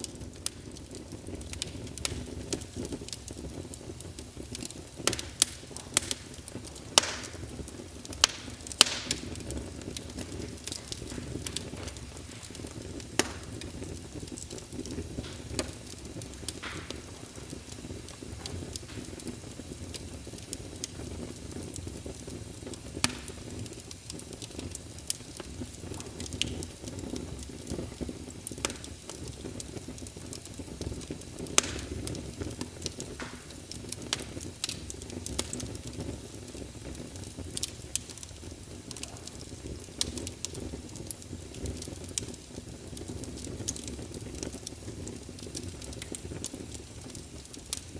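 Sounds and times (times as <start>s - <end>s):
fire crackling and popping: 0.0s - 47.9s.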